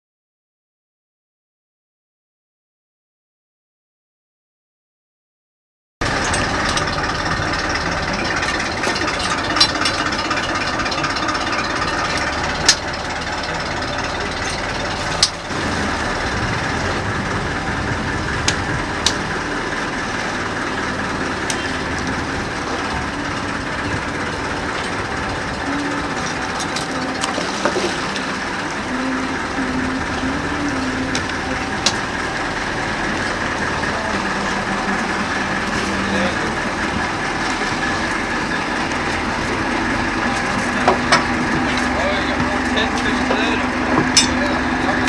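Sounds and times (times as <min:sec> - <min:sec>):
boat engine running: 0:06.0 - 0:45.0.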